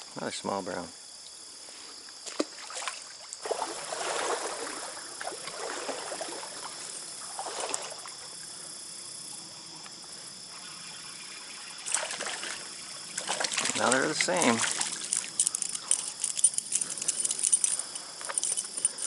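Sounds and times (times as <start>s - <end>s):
stream water splashing: 2.3s - 8.3s, 11.6s - 16.3s.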